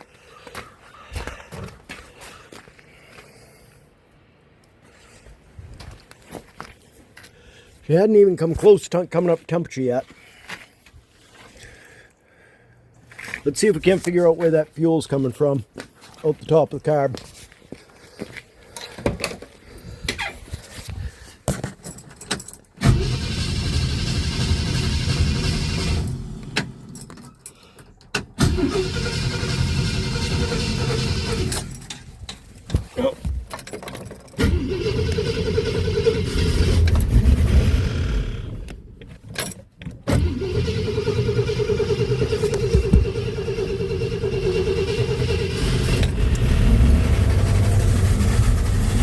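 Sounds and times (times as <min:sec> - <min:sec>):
car engine starting and rumbling: 0:22.8 - 0:32.6, 0:33.9 - 0:49.0.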